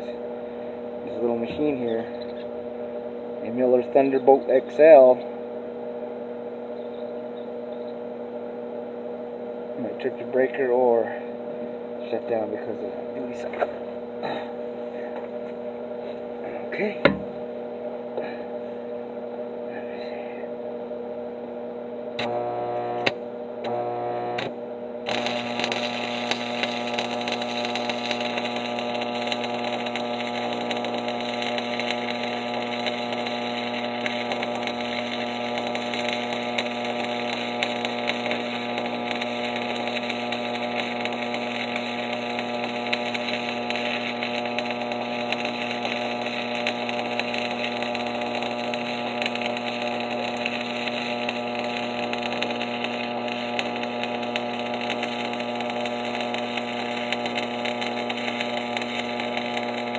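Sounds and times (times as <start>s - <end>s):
welding arc crackling: 0.0s - 0.2s, 0.8s - 5.2s, 22.2s - 59.9s
welder hum: 0.0s - 59.9s.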